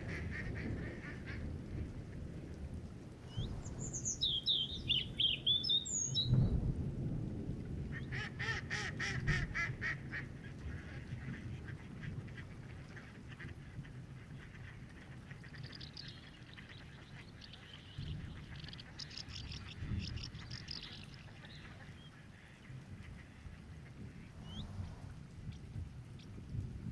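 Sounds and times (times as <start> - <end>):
bird calling in rapid notes: 15.4 - 22.1.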